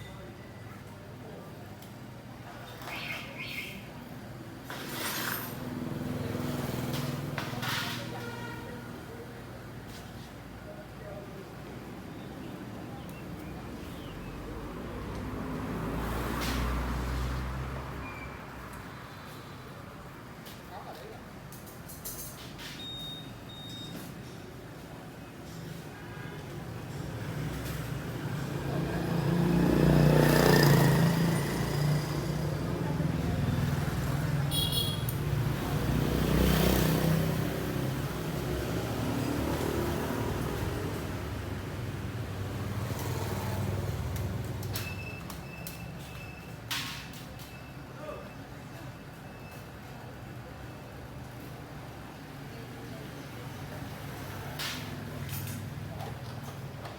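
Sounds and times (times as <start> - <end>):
vehicle passing by: 14.4 - 19.1, 27.1 - 34.5, 35.2 - 44.8.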